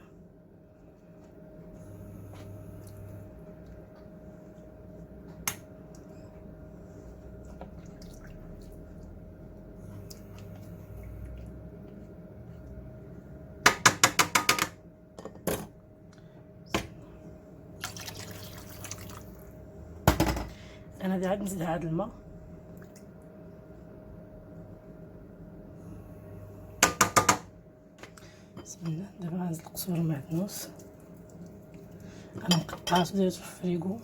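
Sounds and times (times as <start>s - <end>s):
water bubbling in a pot: 7.3s - 11.8s, 17.8s - 19.6s.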